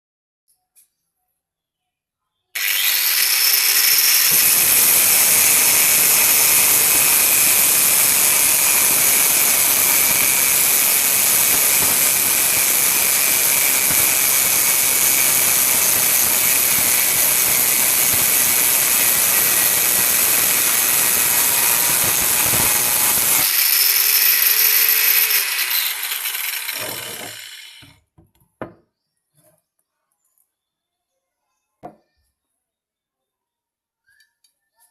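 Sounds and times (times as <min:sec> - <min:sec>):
angle grinder cutting metal: 0:02.6 - 0:28.0.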